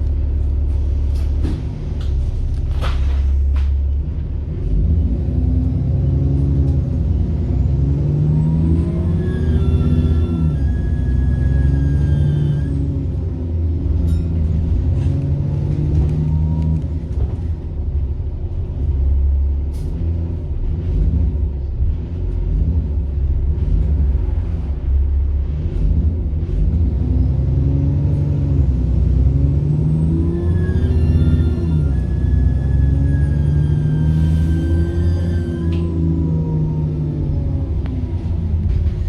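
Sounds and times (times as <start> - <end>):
bus diesel engine: 0.0 - 39.0
turbocharger whine: 28.7 - 39.0.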